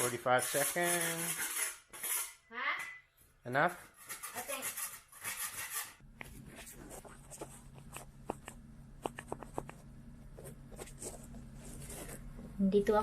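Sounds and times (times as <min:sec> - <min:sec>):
light tapping and scratching: 0:06.3 - 0:12.6.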